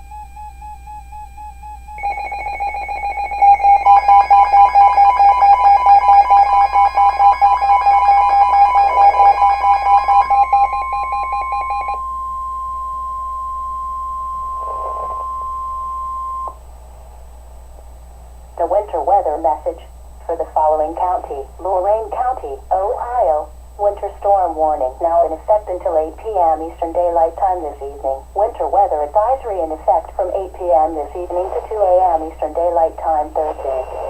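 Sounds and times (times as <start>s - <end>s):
pulsing electronic tones: 0.0s - 16.6s
steady warning tone: 0.0s - 16.6s, 18.6s - 34.0s
warbling alert tone: 2.0s - 12.0s.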